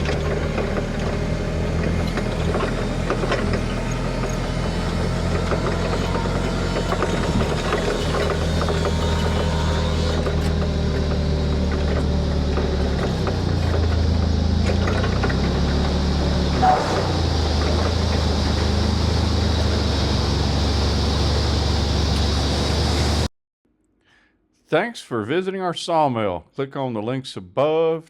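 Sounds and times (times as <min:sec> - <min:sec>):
engine running steadily: 0:00.0 - 0:23.3.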